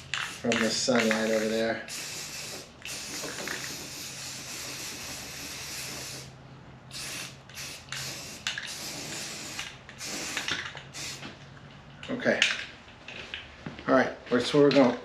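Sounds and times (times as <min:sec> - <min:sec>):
aerosol spray can hissing: 0:00.0 - 0:06.3, 0:06.9 - 0:11.3.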